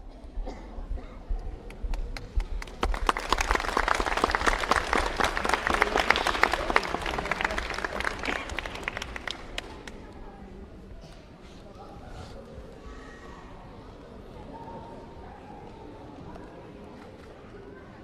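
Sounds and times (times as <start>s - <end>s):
audience applauding: 2.6s - 10.1s.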